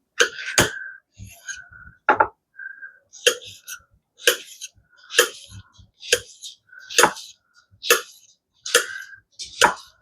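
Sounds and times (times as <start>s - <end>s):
knife chopping on cutting board: 4.2s - 9.9s.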